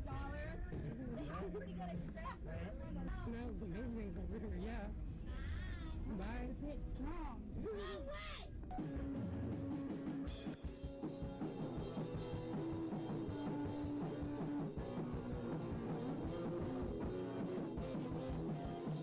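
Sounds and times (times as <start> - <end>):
rock music with guitar and drums: 8.7 - 19.0.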